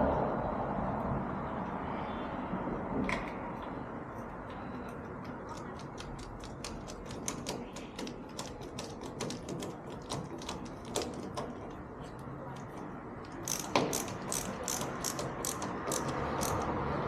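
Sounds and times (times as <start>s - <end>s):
ratcheting screwdriver clicking: 5.5s - 11.8s, 12.6s - 16.8s.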